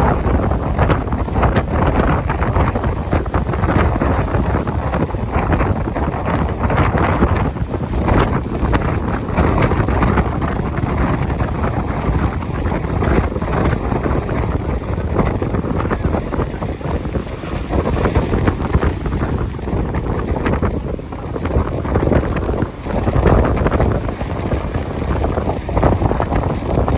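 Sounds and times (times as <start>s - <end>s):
sea waves: 0.0s - 26.9s
wind buffeting microphone: 0.0s - 26.9s.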